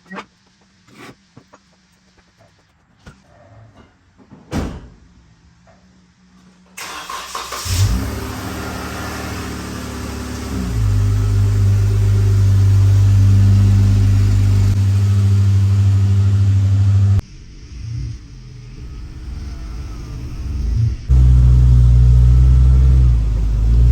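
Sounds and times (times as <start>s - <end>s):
car engine starting and running: 6.8s - 17.2s, 18.1s - 23.9s.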